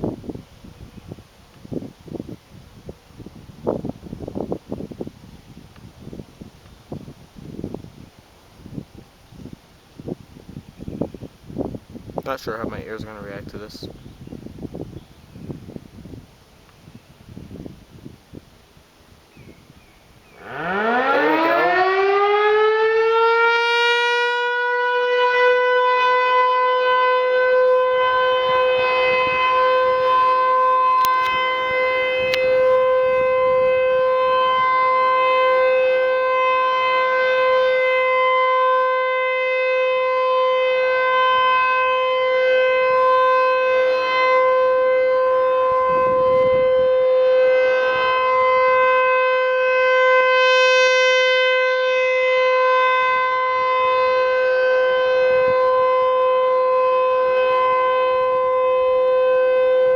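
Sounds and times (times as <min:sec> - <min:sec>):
tornado warning siren: 0:01.8 - 0:07.9, 0:19.6 - 0:59.9.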